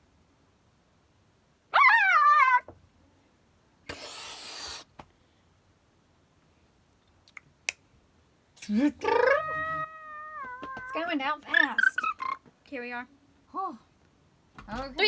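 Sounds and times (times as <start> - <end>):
hissing noise: 3.9 - 4.9
cat meowing: 9.2 - 12.3.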